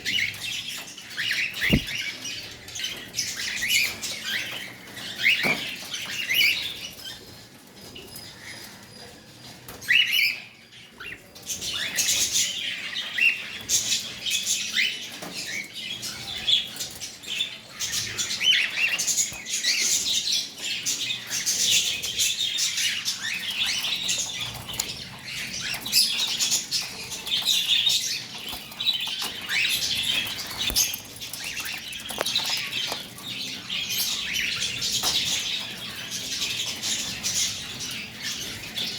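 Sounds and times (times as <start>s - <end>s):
cockatiel chirping: 1.6s - 2.0s.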